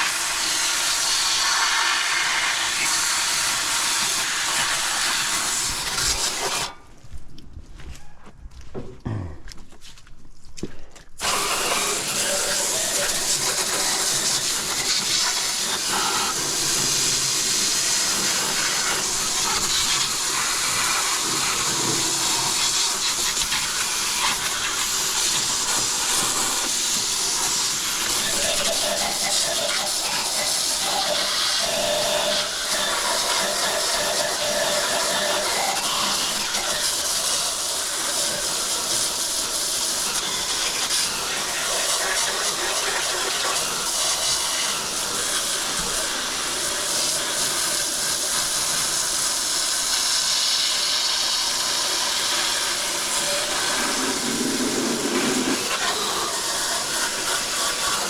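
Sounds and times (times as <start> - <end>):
garden hose spraying water: 0.0 - 6.8, 11.2 - 58.0.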